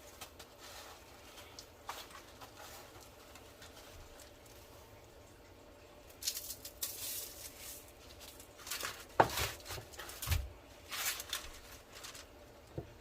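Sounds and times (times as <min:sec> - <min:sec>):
rustling in bread crumbs: 0:00.0 - 0:13.0.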